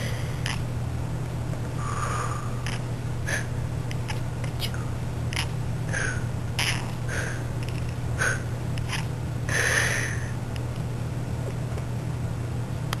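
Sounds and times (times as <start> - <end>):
kitten chittering meows: 6.6 - 7.0.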